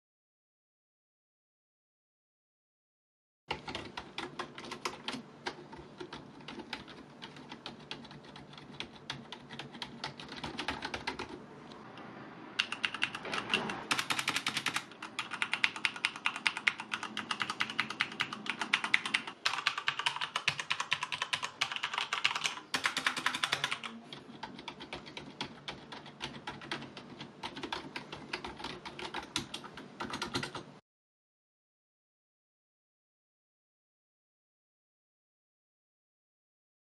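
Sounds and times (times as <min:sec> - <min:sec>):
fast typing on keyboards: 0:03.5 - 0:11.4, 0:12.6 - 0:30.8.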